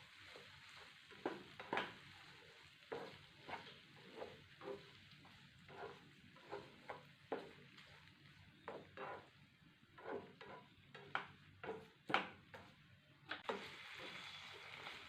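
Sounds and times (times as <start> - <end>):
potatoes sizzling in oil: 0.0 - 15.0
utensil scraping pan: 0.2 - 7.9, 8.6 - 12.7.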